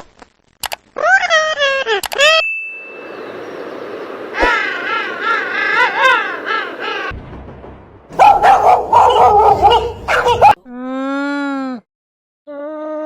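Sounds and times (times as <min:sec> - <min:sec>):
animal warbling call: 0:08.2 - 0:10.6
animal yapping: 0:08.2 - 0:10.6.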